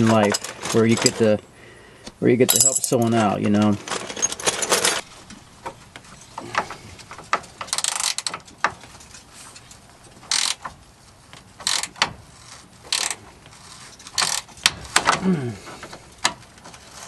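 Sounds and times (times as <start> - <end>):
ratchet wrench clicking: 10.3 - 10.6, 11.6 - 12.1, 12.9 - 13.2, 14.1 - 14.7.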